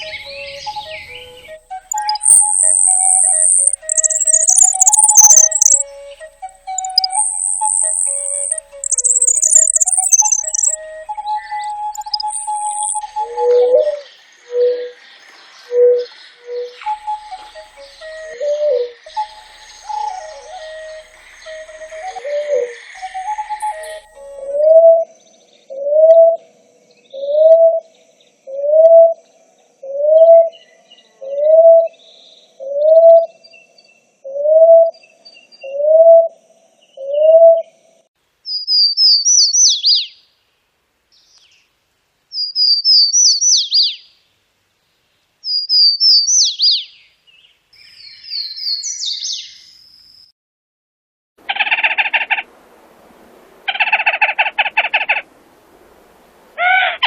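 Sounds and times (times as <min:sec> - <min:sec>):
bird whistling upslurred notes: 0:00.0 - 0:14.0, 0:16.8 - 0:25.0
bird song with falling trill: 0:00.0 - 0:26.4, 0:38.5 - 0:40.2, 0:42.4 - 0:44.1, 0:45.4 - 0:50.3
bird harsh rattling calls: 0:01.9 - 0:05.8, 0:06.7 - 0:10.8, 0:11.9 - 0:13.0, 0:51.5 - 0:52.4.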